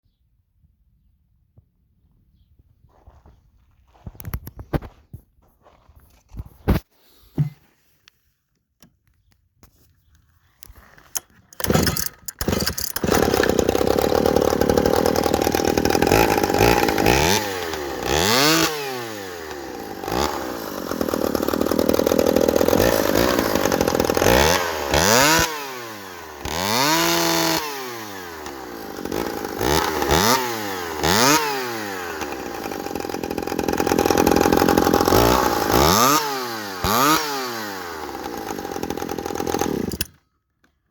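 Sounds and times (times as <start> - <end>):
chainsaw revving: 11.6 - 40.2.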